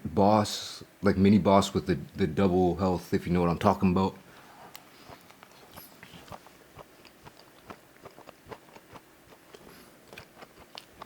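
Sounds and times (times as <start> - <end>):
person chewing food: 4.3 - 11.0.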